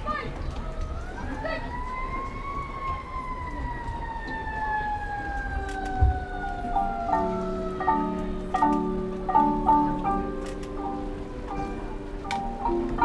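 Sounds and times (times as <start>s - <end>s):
siren wail: 0.6s - 8.7s
held low chords: 6.1s - 13.0s
mallet percussion notes: 6.7s - 13.0s.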